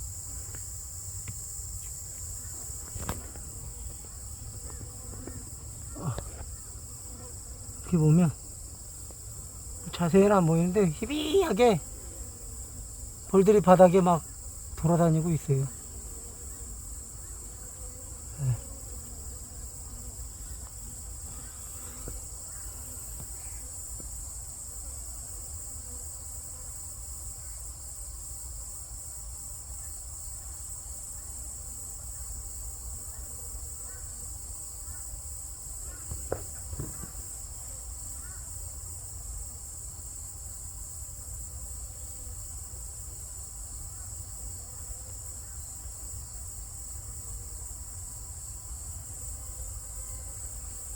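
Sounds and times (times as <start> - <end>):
honeybees buzzing: 0.0 - 26.5, 31.8 - 50.9
high-pitched insect chorus: 0.0 - 50.9
bee buzzing past close: 1.3 - 14.8, 15.4 - 26.6.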